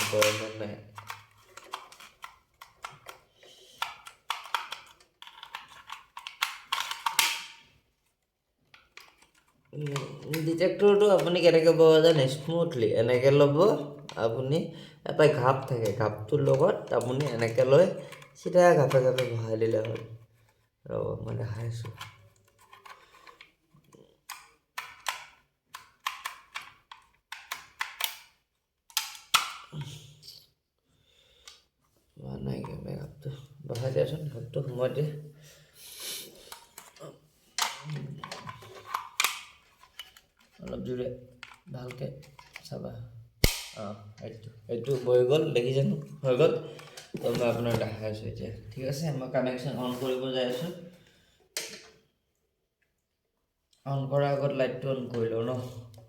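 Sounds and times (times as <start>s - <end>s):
plastic clicks and taps: 3.8s - 7.6s, 21.8s - 29.8s, 37.6s - 40.6s.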